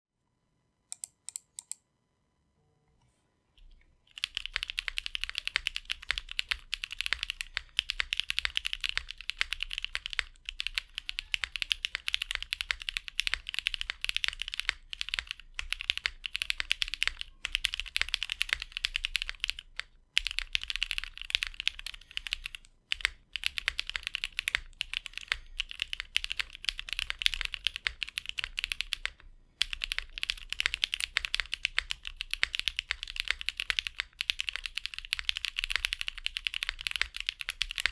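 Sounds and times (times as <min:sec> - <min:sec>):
fast mechanical keyboard typing: 0:04.1 - 0:37.9.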